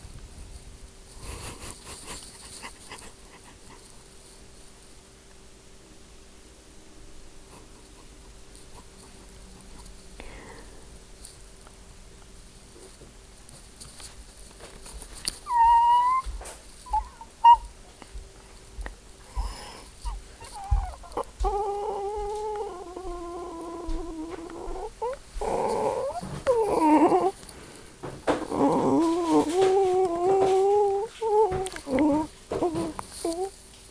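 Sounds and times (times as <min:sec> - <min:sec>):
person imitating animal calls: 0:15.4 - 0:17.7, 0:19.4 - 0:27.4, 0:28.3 - 0:33.5.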